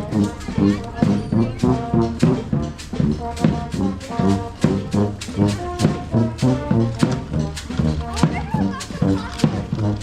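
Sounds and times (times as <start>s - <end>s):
brass horns playing: 0.0s - 10.0s
drum beat: 0.0s - 10.0s.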